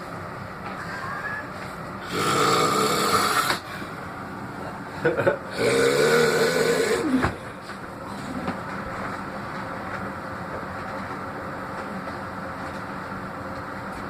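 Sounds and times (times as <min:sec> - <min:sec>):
man snoring: 0:02.0 - 0:03.6, 0:05.5 - 0:07.4.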